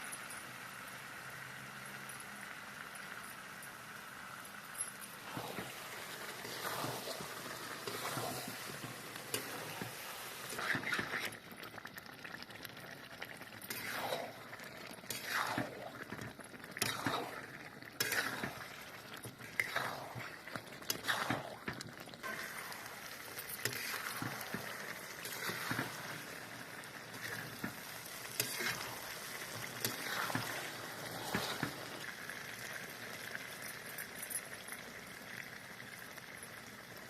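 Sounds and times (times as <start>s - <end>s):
low sizzle: 0.0s - 37.0s
spoon scraping a pan: 5.1s - 11.4s, 13.7s - 32.1s.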